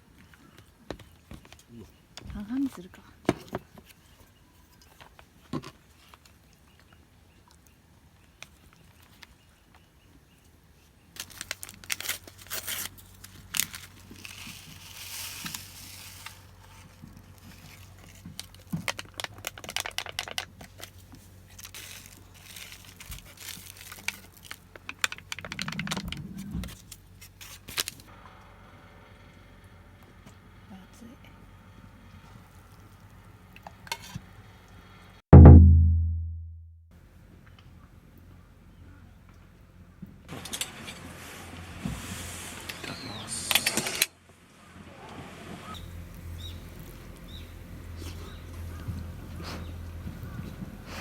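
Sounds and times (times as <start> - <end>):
packets tearing and crinkling: 11.2 - 26.1, 26.7 - 28.1.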